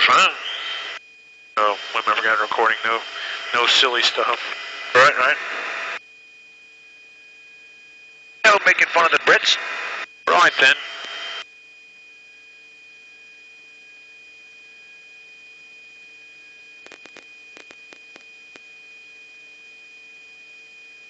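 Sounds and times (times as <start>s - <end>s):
high electrical whine: 0.0s - 1.0s, 1.6s - 6.0s, 8.4s - 11.5s, 16.5s - 19.0s.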